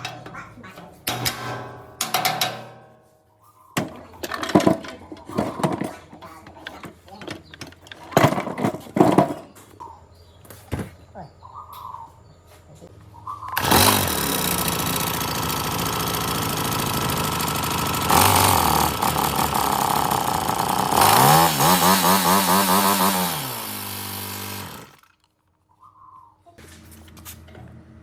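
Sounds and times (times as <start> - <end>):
handheld power tool running: 13.5 - 25.2.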